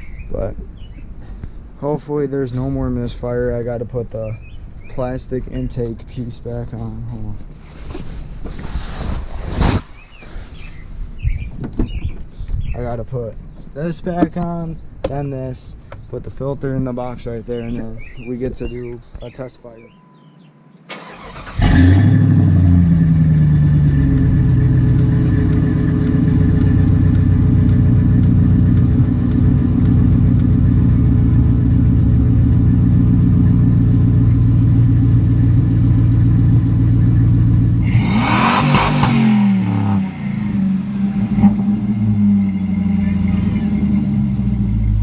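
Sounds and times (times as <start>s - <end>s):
engine revving: 20.9s - 28.2s, 37.8s - 45.0s
car engine starting and idling: 20.9s - 45.0s.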